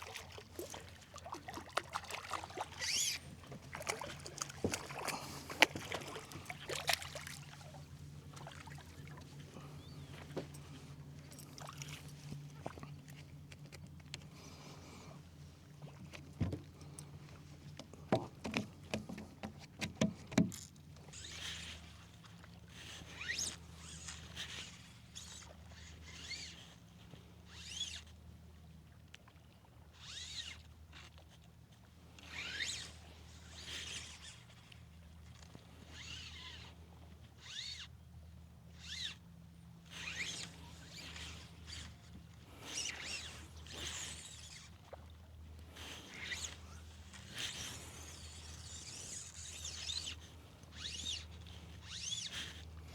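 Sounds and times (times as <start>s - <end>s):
shallow water splashing: 0.0s - 10.2s.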